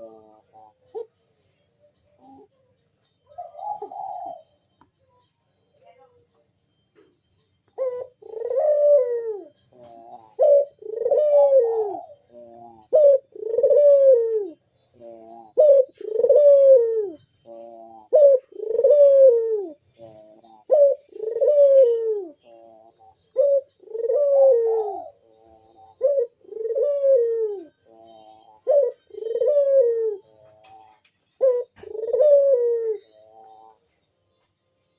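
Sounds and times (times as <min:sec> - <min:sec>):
dove cooing: 0:00.0 - 0:04.7, 0:07.7 - 0:33.9.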